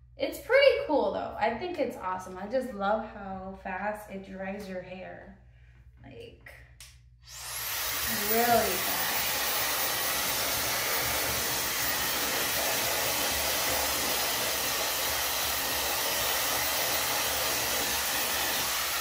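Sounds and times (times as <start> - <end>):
blow dryer brush running: 7.2 - 19.0.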